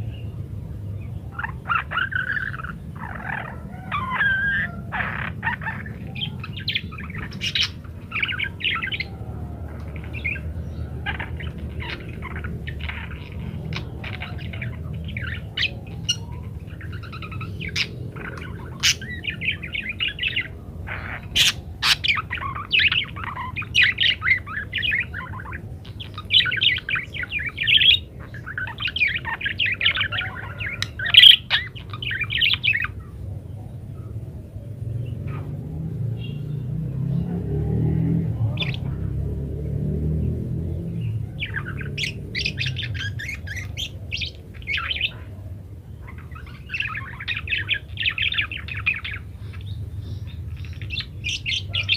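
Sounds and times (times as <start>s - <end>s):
budgerigars chattering and warbling: 0.0s - 51.9s.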